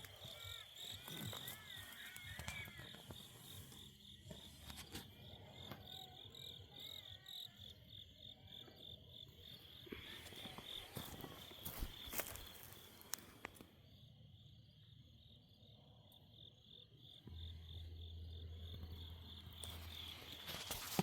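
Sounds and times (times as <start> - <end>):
faint crickets chirping: 0.0 - 21.0.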